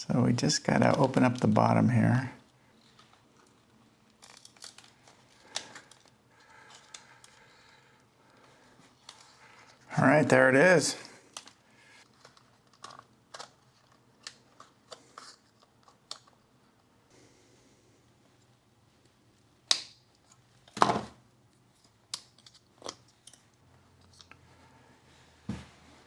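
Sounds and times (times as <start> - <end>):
small clicks and snips: 2.8 - 7.5, 11.3 - 16.5, 19.6 - 20.4, 21.6 - 24.4.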